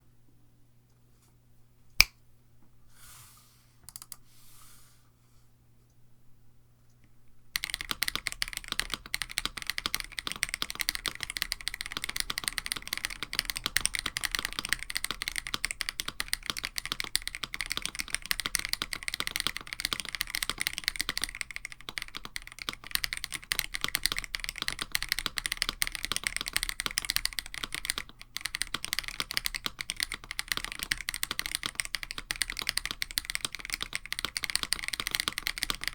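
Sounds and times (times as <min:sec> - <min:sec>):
fast typing on mechanical keyboard: 0:07.6 - 0:35.9.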